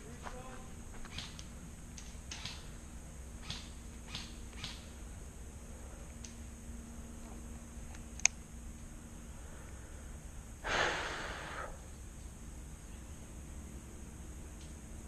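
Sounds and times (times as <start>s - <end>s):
sharp click: 1.1s - 2.6s, 3.4s - 4.8s, 7.9s - 8.4s
breathy exhale: 9.3s - 11.9s.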